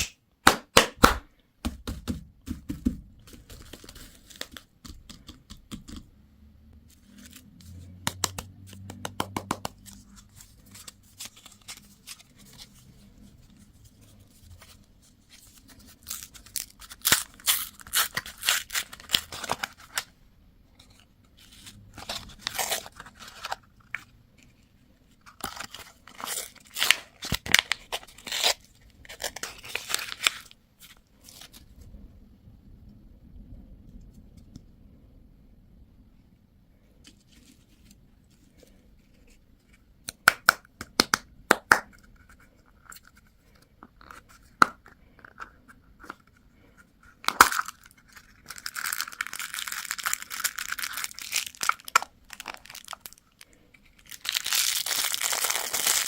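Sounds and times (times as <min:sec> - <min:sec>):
wrappers tearing and crinkling: 0:47.3 - 0:56.0.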